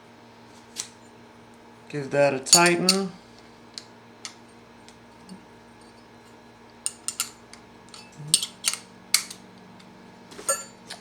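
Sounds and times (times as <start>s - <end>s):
metallic clicks of spray gun parts: 2.6s - 3.1s, 6.9s - 9.4s.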